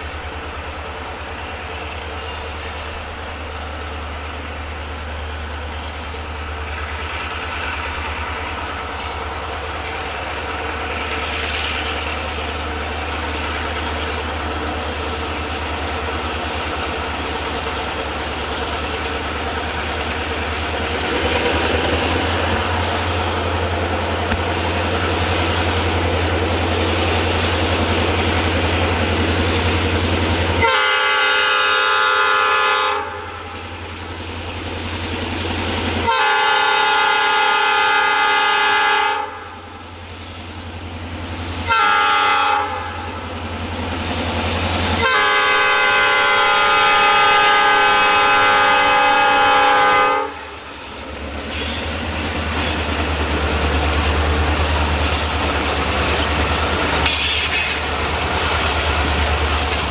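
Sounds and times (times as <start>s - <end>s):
locomotive horn blasts: 30.6s - 33.6s, 36.0s - 39.6s, 41.6s - 43.1s, 45.0s - 50.5s.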